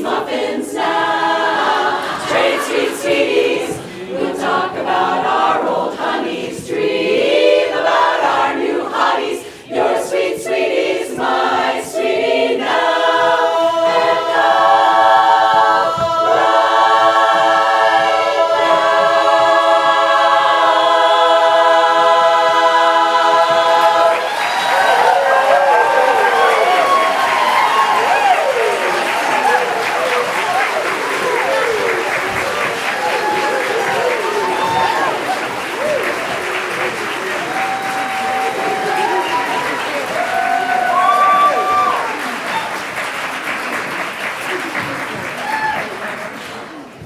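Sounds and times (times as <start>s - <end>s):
a cappella chorus singing: 0.0s - 42.8s.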